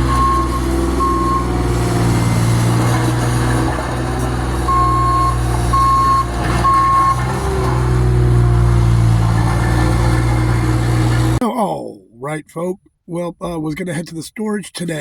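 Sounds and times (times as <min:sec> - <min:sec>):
reversing alarm beeping: 0:00.0 - 0:01.5, 0:04.7 - 0:07.2
truck engine running: 0:00.0 - 0:11.4.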